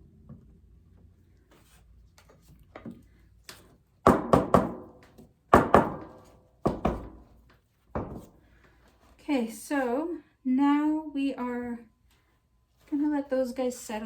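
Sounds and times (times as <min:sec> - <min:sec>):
objects knocking on work table: 0:07.9 - 0:08.3.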